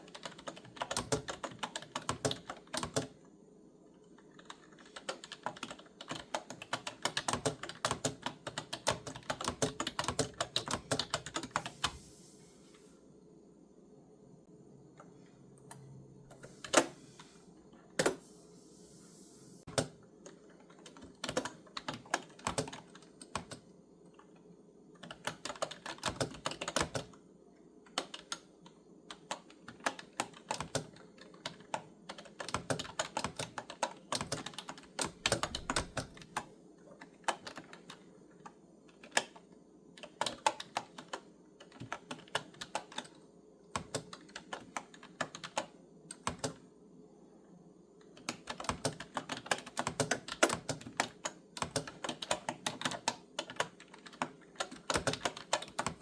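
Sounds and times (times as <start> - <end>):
clicky keyboard typing: 0.0 - 3.2, 4.0 - 12.0, 18.0 - 18.2, 19.7 - 27.2, 27.9 - 46.7, 48.0 - 56.0.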